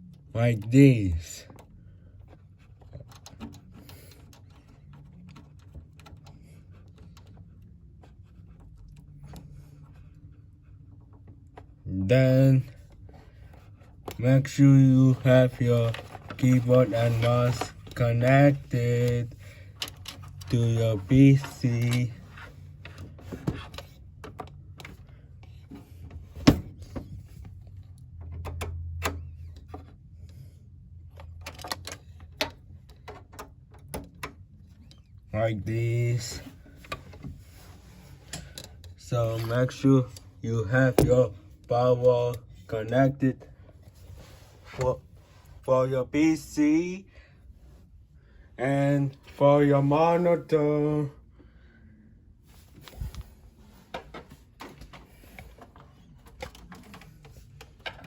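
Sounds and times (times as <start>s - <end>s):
cables clicking and scratching: 0.0s - 30.4s, 53.9s - 58.0s
low steady hum: 0.0s - 58.0s.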